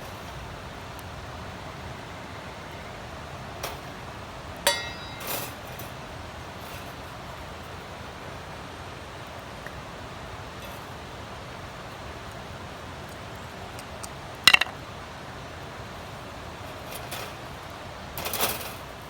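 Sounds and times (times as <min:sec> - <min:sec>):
background hiss: 0:00.0 - 0:19.0
metallic clink: 0:04.6 - 0:06.0.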